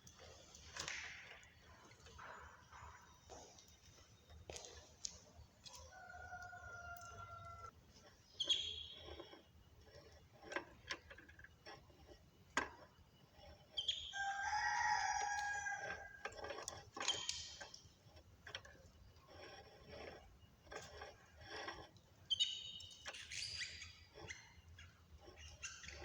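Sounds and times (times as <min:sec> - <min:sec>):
rooster crowing: 0:05.9 - 0:07.7, 0:14.2 - 0:16.2
cage birds chirping: 0:08.2 - 0:09.0, 0:13.7 - 0:14.4, 0:22.3 - 0:26.0.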